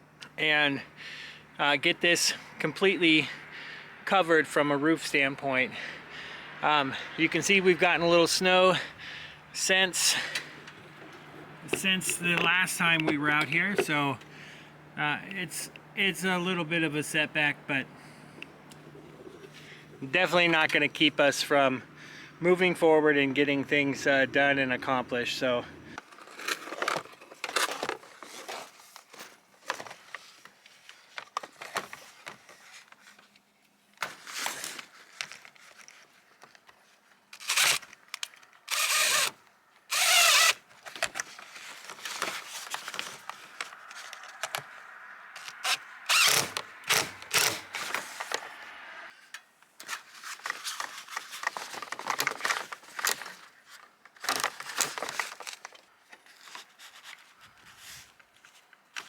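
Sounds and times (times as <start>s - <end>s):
clicks and scraping: 10.2s - 14.3s
handling clatter: 10.2s - 14.3s
power drill running in bursts: 38.7s - 39.3s.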